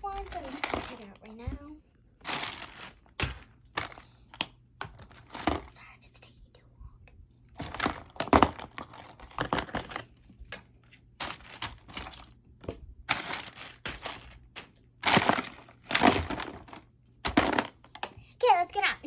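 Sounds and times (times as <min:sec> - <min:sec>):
plastic packaging rustling: 0:00.0 - 0:01.5, 0:02.2 - 0:05.7, 0:07.6 - 0:12.4, 0:13.0 - 0:18.0.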